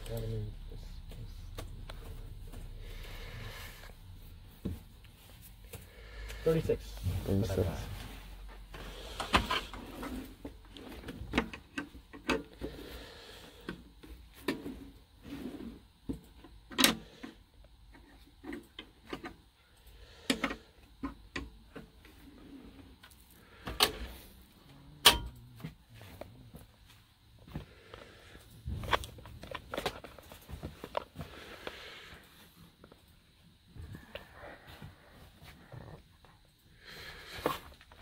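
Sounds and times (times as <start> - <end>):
tools clicking and knocking: 25.0 - 25.5.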